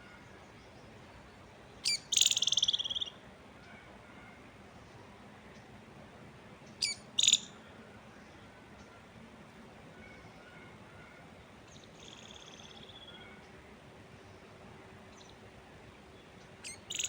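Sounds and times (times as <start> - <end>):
songbird calling with trill: 1.8 - 3.2, 6.7 - 7.6, 10.0 - 13.5, 16.2 - 17.0.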